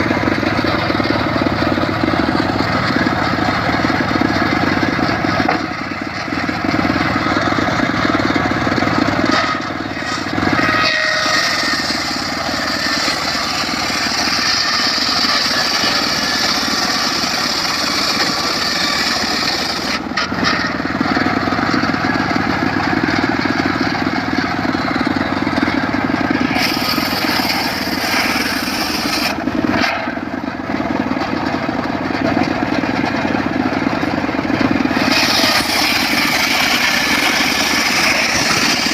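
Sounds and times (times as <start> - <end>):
circular saw running: 0.0 - 38.9
saw blade cutting wood: 8.9 - 20.9, 26.2 - 30.3, 34.5 - 38.9.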